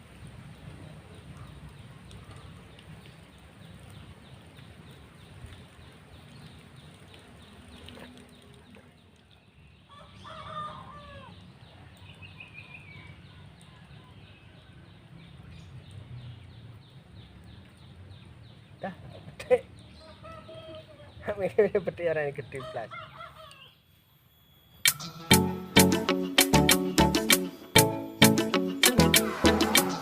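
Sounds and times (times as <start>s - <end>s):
outdoor background noise: 0.0s - 30.0s
chicken calling: 20.0s - 21.3s, 22.6s - 23.8s.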